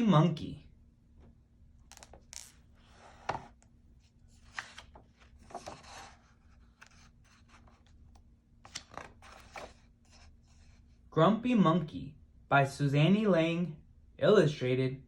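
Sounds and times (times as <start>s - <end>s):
book pages rustling: 1.9s - 10.8s.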